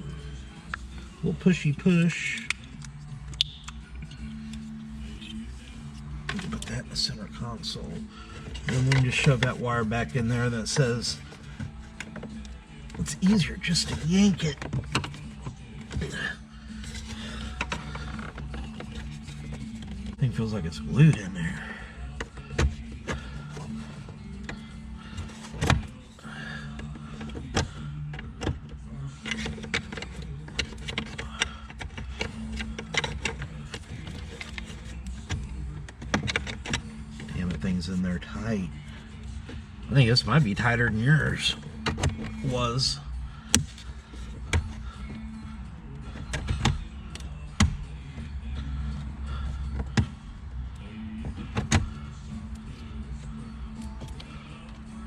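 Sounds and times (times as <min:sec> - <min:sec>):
plastic trim clicking and creaking: 0:26.8 - 0:37.6.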